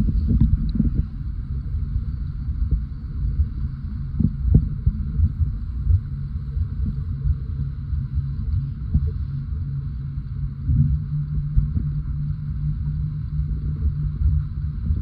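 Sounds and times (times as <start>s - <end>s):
underwater moving water rumble: 0.0s - 15.0s.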